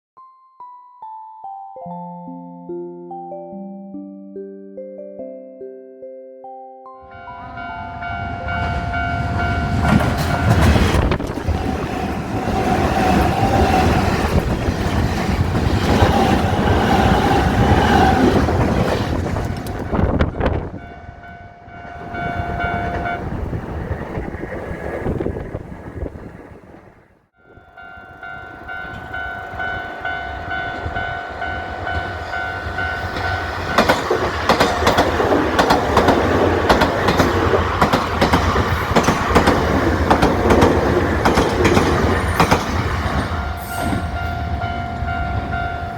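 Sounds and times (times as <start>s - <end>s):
level crossing alarm ringing: 7.0s - 10.8s, 19.8s - 23.4s, 27.4s - 36.8s, 38.6s - 45.9s
train wheels clattering on rails: 8.6s - 20.6s, 31.9s - 44.8s.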